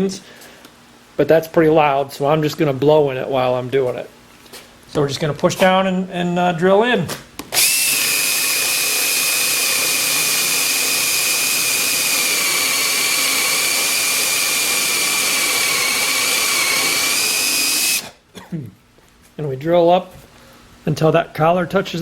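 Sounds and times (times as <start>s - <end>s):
power drill whining: 7.5s - 18.2s.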